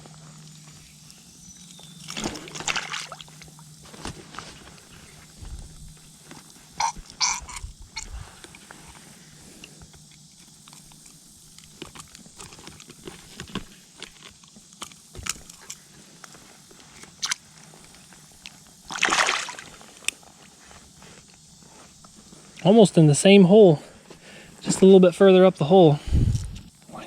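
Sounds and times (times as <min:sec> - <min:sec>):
handling clicks and rustles: 0:00.1 - 0:18.8
water splashing around wader: 0:02.0 - 0:03.6, 0:18.9 - 0:19.8.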